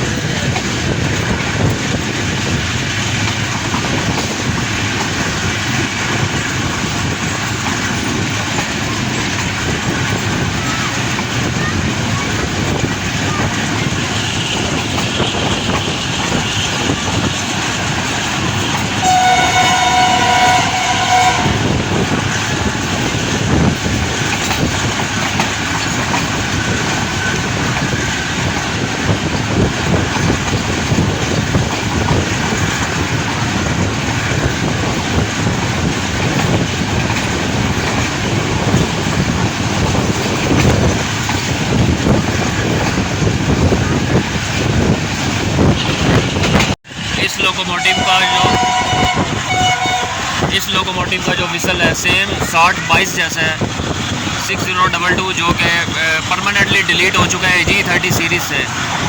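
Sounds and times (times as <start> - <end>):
train rolling rumble: 0.0 - 59.0
locomotive horn: 14.1 - 17.5, 18.6 - 22.1, 47.6 - 50.6.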